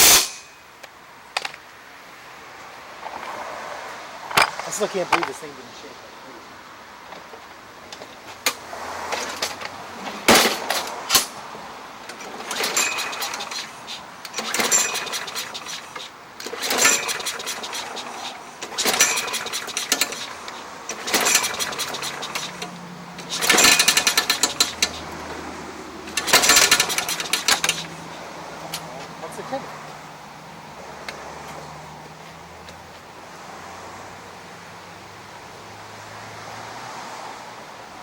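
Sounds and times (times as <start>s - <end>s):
power tool rattling in bursts: 12.1s - 27.9s.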